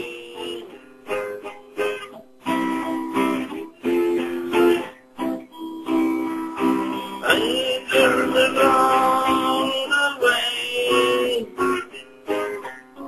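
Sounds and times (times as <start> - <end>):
acoustic guitar strumming chords: 0.0 - 13.0.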